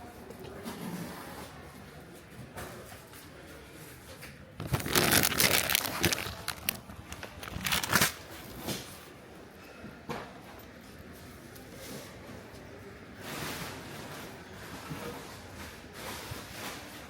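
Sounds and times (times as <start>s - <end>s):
crinkling and rustling handling: 2.2s - 9.2s.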